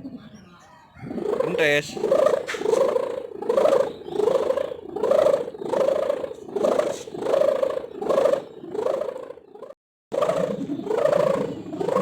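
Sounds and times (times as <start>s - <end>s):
kite hummer droning in wind: 0.0s - 12.0s.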